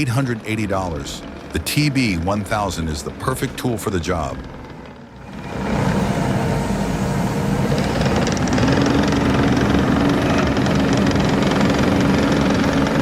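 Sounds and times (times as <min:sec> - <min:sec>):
heavy machine engine running: 0:00.0 - 0:13.0.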